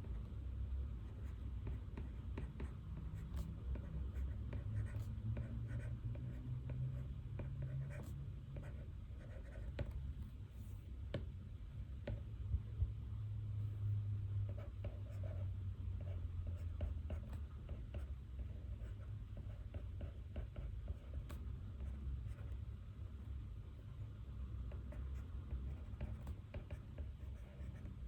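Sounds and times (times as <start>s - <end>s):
low room hum: 0.0s - 28.0s
pen scratching on paper: 1.2s - 5.9s, 7.4s - 10.0s, 14.5s - 15.4s, 16.0s - 22.6s, 24.7s - 28.0s.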